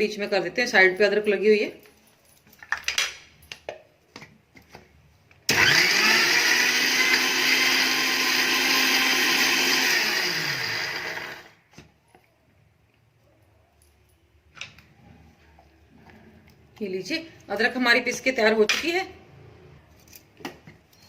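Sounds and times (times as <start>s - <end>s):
mixer grinder motor grinding: 5.5s - 11.6s.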